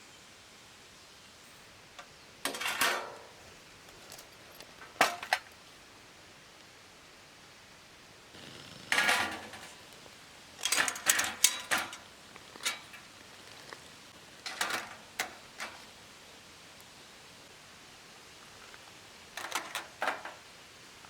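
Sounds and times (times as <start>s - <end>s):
metal cookware clinking: 10.6s - 13.1s.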